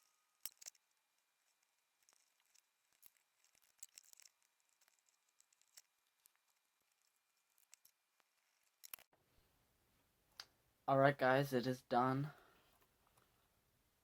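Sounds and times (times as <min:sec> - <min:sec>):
small parts and tools clicking: 0:00.0 - 0:09.2.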